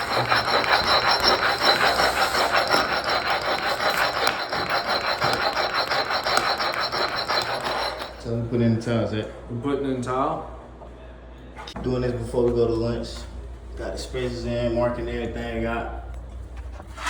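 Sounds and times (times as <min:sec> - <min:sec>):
trowel scraping concrete: 0:00.0 - 0:08.2.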